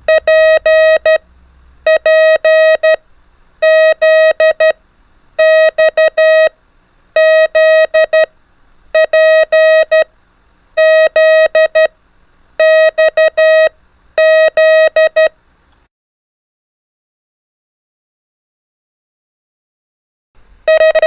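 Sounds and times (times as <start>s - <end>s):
morse code beeps: 0.1s - 1.2s, 1.9s - 3.0s, 3.6s - 4.8s, 5.4s - 6.5s, 7.2s - 8.3s, 9.0s - 10.1s, 10.8s - 11.9s, 12.6s - 15.3s, 20.7s - 21.0s.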